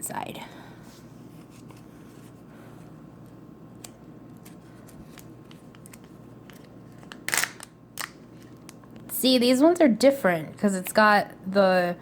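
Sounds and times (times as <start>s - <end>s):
wrapper rustling and tearing: 5.1s - 8.8s.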